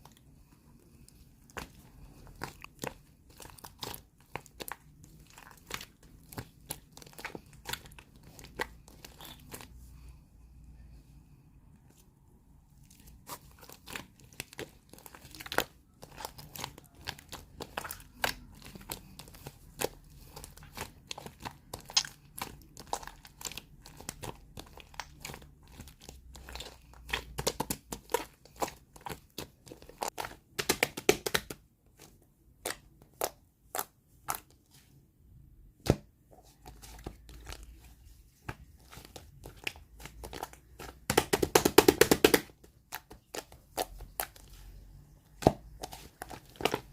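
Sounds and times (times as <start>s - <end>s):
slime clicking and popping: 20.2s - 25.2s.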